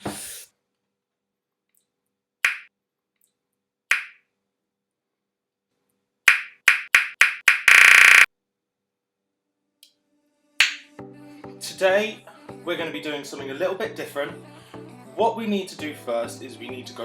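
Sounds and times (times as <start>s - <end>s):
sharp snaps: 2.4s - 2.7s, 3.9s - 4.2s, 6.3s - 8.3s, 10.6s - 11.0s
loud buzzing burst: 7.0s - 8.3s.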